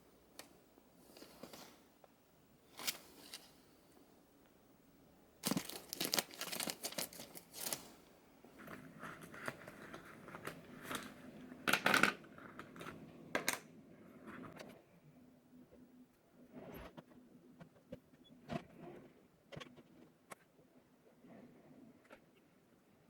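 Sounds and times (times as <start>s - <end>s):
packaging crinkling and tearing: 5.4s - 8.0s.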